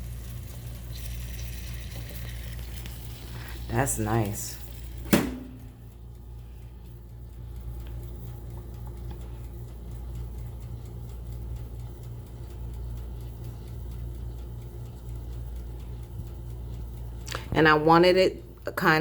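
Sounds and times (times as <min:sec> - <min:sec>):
toaster oven humming: 0:00.0 - 0:19.0
timer ticking: 0:04.7 - 0:19.0.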